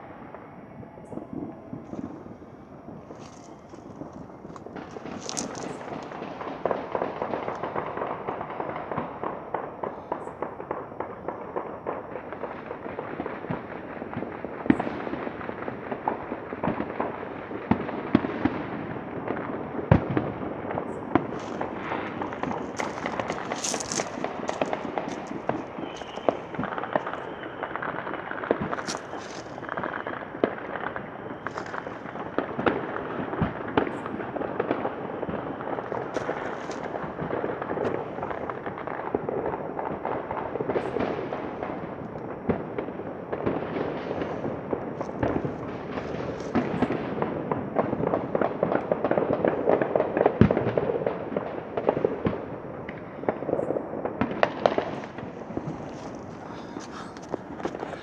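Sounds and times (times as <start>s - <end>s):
fireworks crackling and popping: 0.0s - 58.0s
gunshots: 21.0s - 27.4s.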